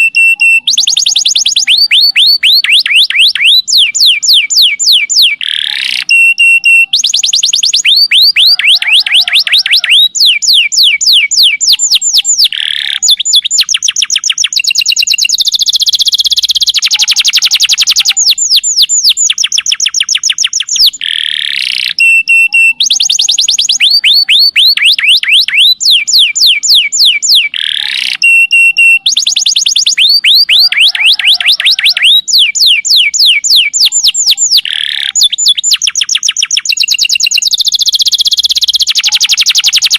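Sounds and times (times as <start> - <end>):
canary singing trills: 0.0 - 39.9.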